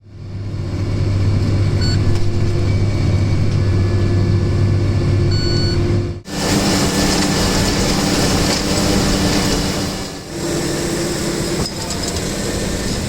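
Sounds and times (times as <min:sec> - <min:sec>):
tractor engine running: 0:00.0 - 0:13.0
bright machinery noise: 0:00.1 - 0:13.0
short high electronic beeps: 0:05.3 - 0:05.9.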